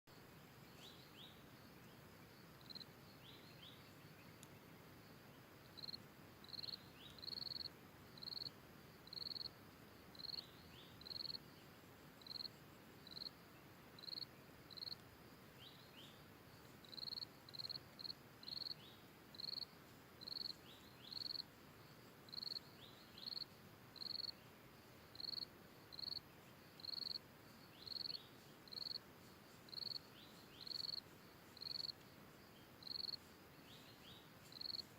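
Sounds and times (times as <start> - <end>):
faint steady hiss: 0.1 - 34.9
insect chirping in high pulses: 0.8 - 15.0, 15.6 - 34.9.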